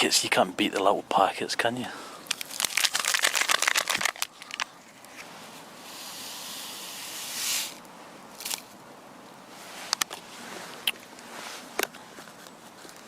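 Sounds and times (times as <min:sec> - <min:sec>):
paper foil sachet crinkling: 0:02.3 - 0:04.7
soft hiss: 0:04.1 - 0:13.0.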